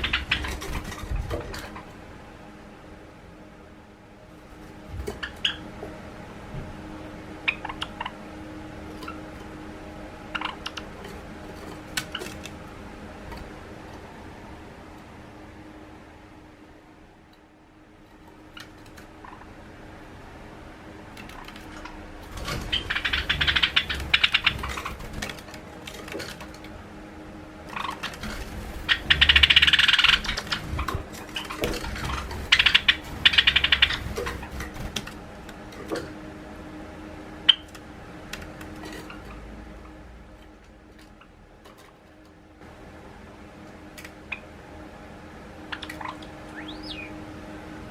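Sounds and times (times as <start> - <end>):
sparrows clicking alarm chatter: 0.0 - 1.9, 7.4 - 8.2, 21.3 - 25.2, 27.7 - 34.8, 45.7 - 47.2
wing flutter: 0.0 - 2.1, 21.0 - 36.3.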